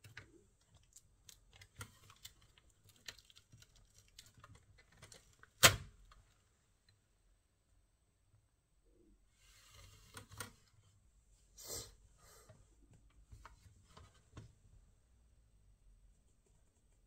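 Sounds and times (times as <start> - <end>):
faint rubbing and scraping: 9.3 - 14.4.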